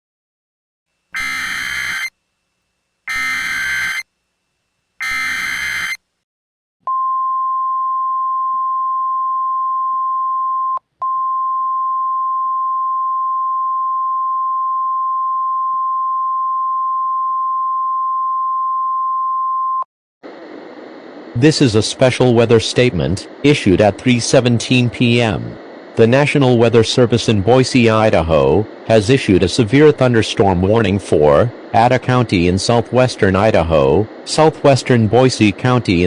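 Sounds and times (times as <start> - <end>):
steady high warning tone: 1.0 - 4.1, 5.0 - 6.1
buzzy data bursts: 1.1 - 2.1, 3.1 - 4.0, 5.0 - 6.0.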